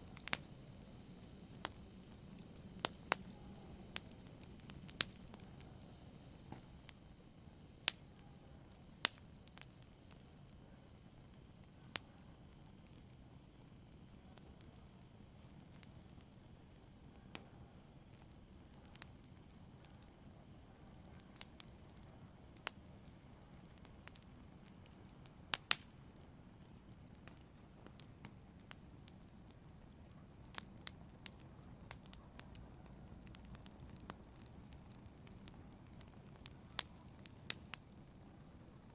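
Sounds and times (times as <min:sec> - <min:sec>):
logs crackling and popping: 0:00.0 - 0:07.1, 0:09.0 - 0:10.2, 0:20.8 - 0:38.9
low rumble of flames: 0:00.0 - 0:38.9.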